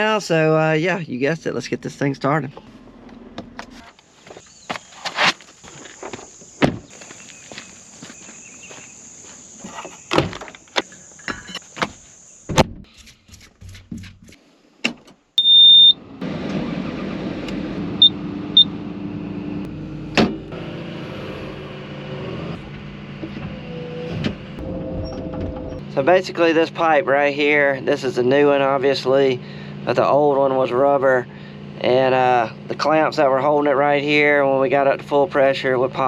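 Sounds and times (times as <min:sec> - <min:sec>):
loud beep: 0:15.4 - 0:16.0
short beeps: 0:15.4 - 0:16.0.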